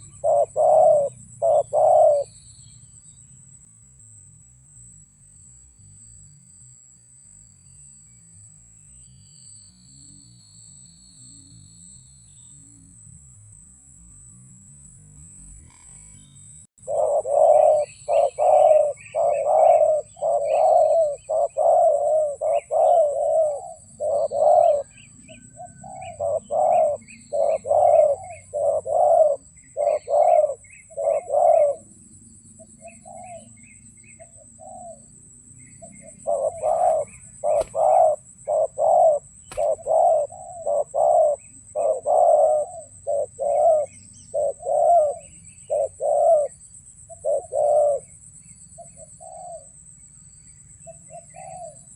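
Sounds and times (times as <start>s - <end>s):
doves cooing: 0.0s - 2.3s, 16.8s - 31.9s, 35.8s - 48.1s, 48.8s - 49.7s, 50.9s - 51.9s.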